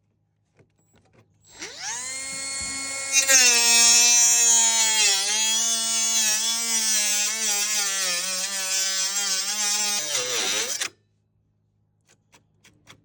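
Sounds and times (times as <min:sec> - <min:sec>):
power tool cutting plastic: 0:01.5 - 0:11.0.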